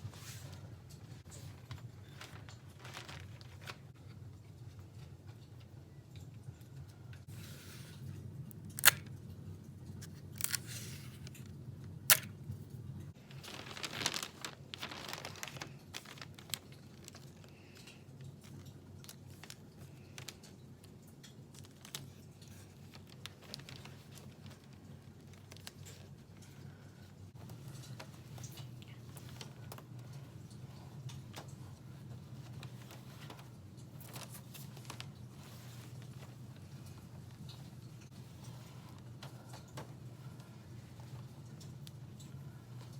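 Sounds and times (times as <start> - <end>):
wrapping paper rustling: 0.0 - 4.8, 9.9 - 11.5, 12.1 - 42.9
sharp paper snaps: 8.6 - 9.1, 12.1 - 12.3
paper tearing: 13.3 - 16.5.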